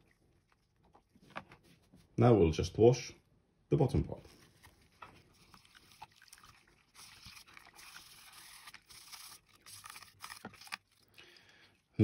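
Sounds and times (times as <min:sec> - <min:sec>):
toothbrush scrubbing plastic: 0:04.3 - 0:11.8.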